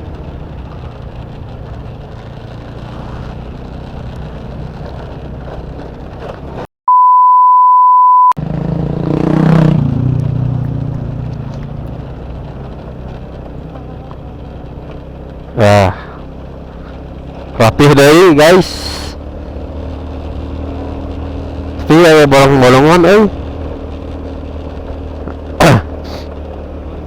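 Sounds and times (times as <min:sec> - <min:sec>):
motorcycle engine and road rumble: 0:00.0 - 0:06.7, 0:08.4 - 0:27.0
censor bleep: 0:06.8 - 0:08.4.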